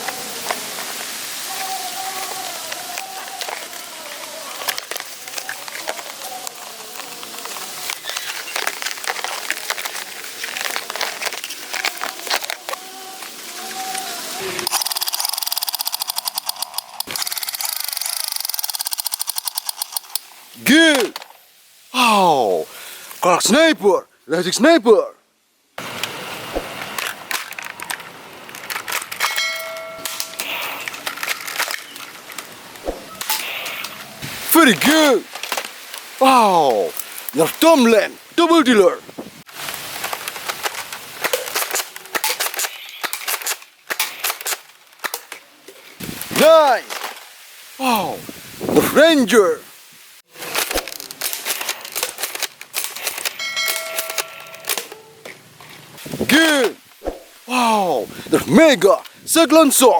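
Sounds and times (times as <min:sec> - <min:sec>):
toy blasters clattering: 0:13.9 - 0:20.3, 0:26.8 - 0:32.5, 0:40.0 - 0:45.4, 0:50.4 - 0:55.4
brief ringing tone: 0:53.4 - 0:54.7.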